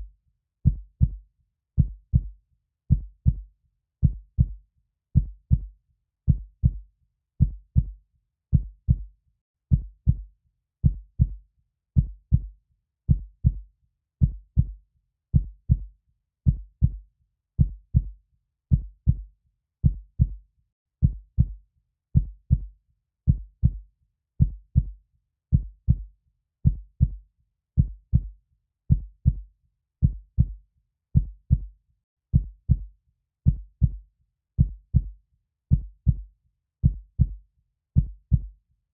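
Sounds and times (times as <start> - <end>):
heartbeat thumps: 2.9 - 3.4, 6.3 - 6.8, 7.4 - 7.9, 10.8 - 11.4, 12.0 - 12.5, 14.2 - 14.7, 19.8 - 20.4, 22.2 - 22.7, 23.3 - 23.8, 24.4 - 24.9, 25.5 - 26.0, 26.7 - 27.2, 27.8 - 28.3, 28.9 - 29.4, 30.0 - 30.6, 31.2 - 31.7, 32.3 - 32.9, 33.5 - 34.0, 34.6 - 35.1, 35.7 - 37.4, 38.0 - 38.5.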